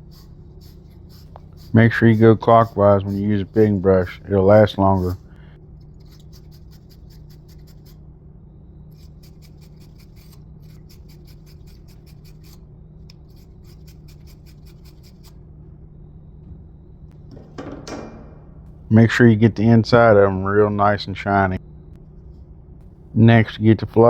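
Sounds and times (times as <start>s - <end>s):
wire brush scrubbing pipe fittings: 0.0s - 8.0s, 8.9s - 15.4s
steady low hum: 0.0s - 24.0s.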